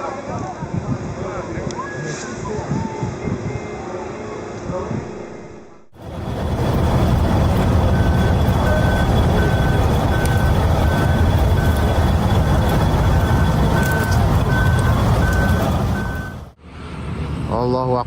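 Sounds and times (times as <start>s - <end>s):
low rumble: 4.7s - 17.5s
electronic warning beeps: 6.6s - 16.5s.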